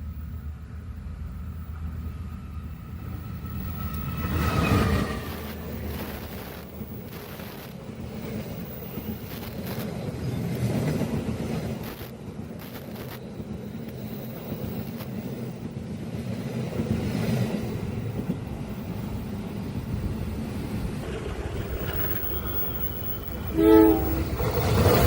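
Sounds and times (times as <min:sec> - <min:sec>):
train rumbling: 0:00.0 - 0:25.0
train horn blast: 0:23.4 - 0:24.6.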